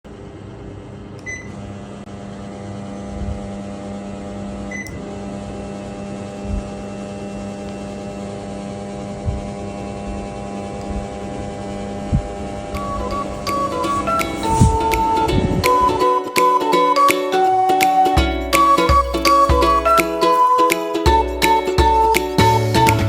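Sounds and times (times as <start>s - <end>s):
ceiling fan electrical hum: 0.1s - 23.0s
soft low thumps: 9.2s - 10.2s.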